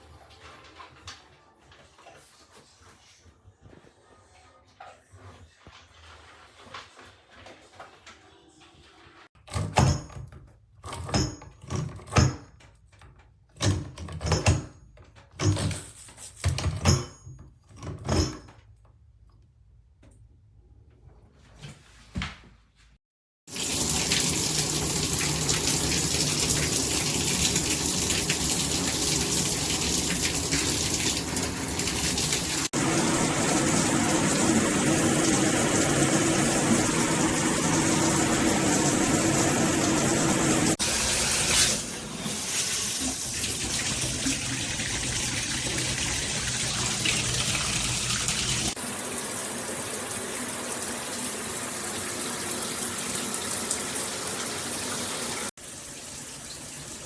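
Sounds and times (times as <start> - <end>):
shower head spraying water: 23.5 - 48.8.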